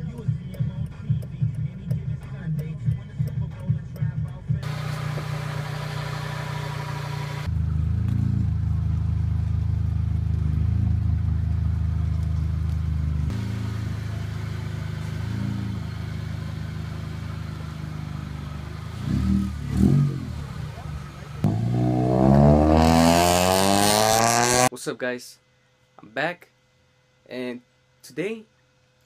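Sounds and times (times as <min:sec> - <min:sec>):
car engine idling: 0:00.0 - 0:23.0.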